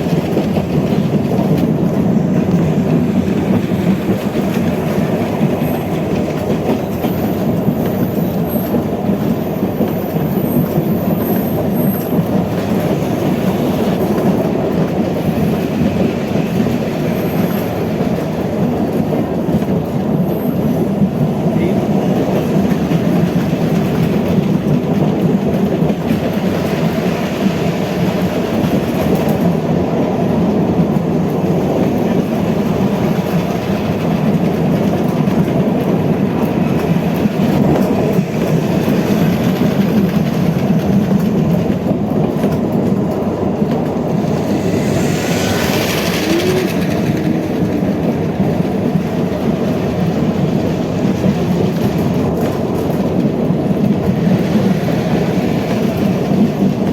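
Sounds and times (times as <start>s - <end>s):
train running on rails: 0.0s - 56.9s
high hiss: 43.9s - 48.0s.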